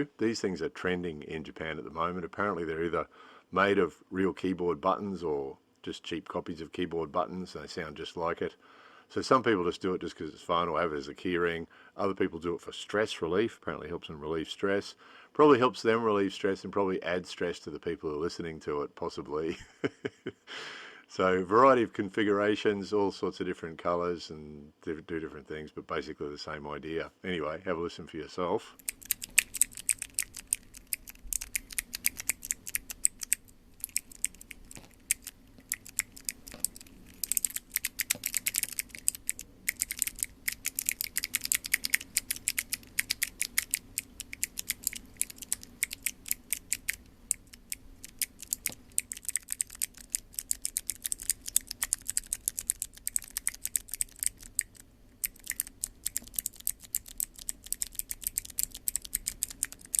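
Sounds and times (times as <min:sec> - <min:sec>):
keyboard key fidget toys clicking: 0:28.8 - 1:00.0.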